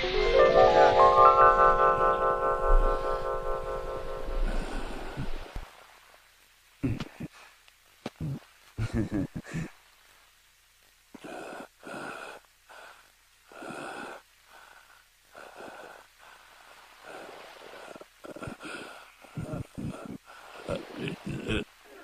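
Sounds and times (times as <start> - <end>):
person panting heavily: 4.4 - 5.4.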